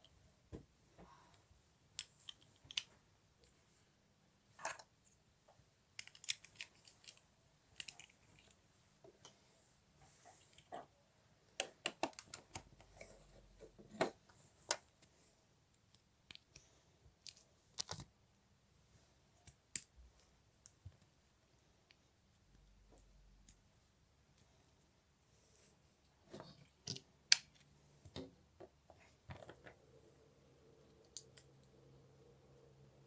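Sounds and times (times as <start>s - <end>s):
plastic bricks clicking together: 6.0s - 7.2s.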